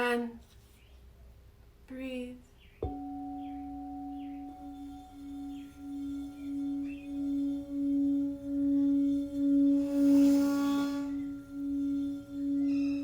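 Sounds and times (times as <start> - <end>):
singing bowl humming: 2.8 - 13.0.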